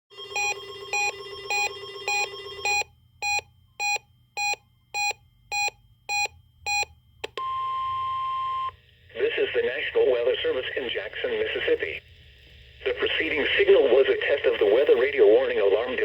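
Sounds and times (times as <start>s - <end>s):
steady warning alarm tone: 0.1s - 6.8s
electronic alarm beeps: 0.3s - 8.8s.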